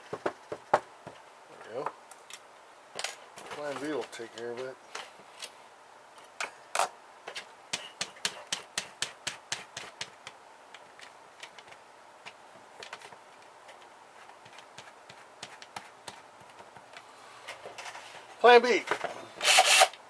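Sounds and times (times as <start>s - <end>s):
hand tools clicking and tapping: 6.2s - 17.1s.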